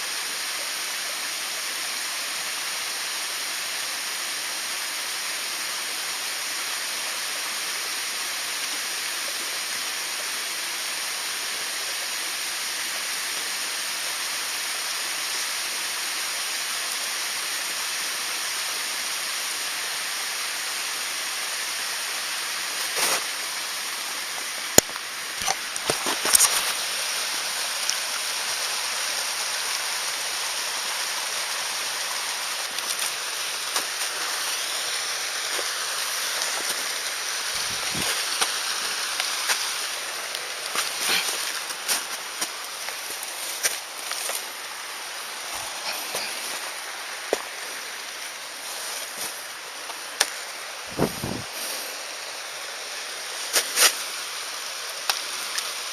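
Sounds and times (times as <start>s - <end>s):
mountain stream rushing: 0.0s - 55.9s.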